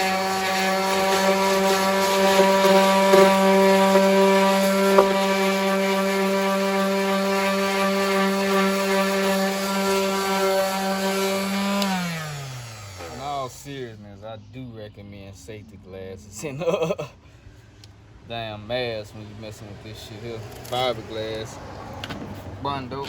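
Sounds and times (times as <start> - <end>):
electric sander humming: 0.0 - 13.4.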